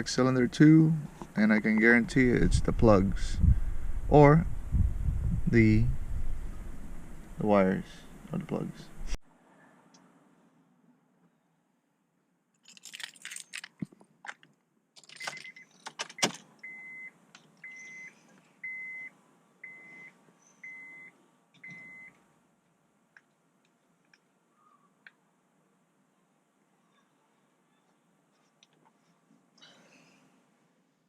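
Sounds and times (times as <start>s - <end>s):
car keys jangling: 12.6s - 16.4s
vehicle warning chime beeping: 16.6s - 22.1s.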